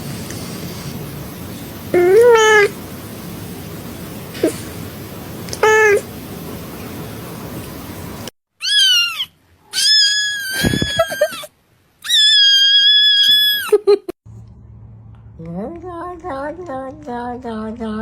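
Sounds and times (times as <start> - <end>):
steady hiss: 0.0 - 8.4
cat meowing: 2.0 - 2.7, 5.6 - 6.0, 8.6 - 13.7
cat yowling: 2.0 - 2.8, 5.6 - 6.1, 8.6 - 13.7.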